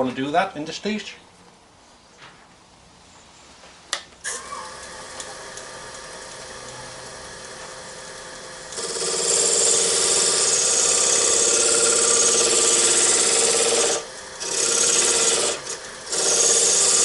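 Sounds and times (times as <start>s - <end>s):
wood lathe humming: 4.3s - 17.0s
turning tool scraping wood: 8.8s - 17.0s.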